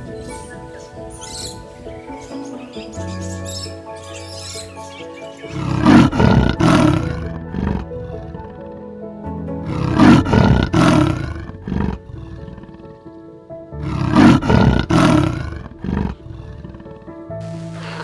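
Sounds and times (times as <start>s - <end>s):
background music with held tones: 0.0s - 18.0s
big cat roaring: 5.5s - 8.6s, 9.6s - 13.0s, 13.8s - 17.2s.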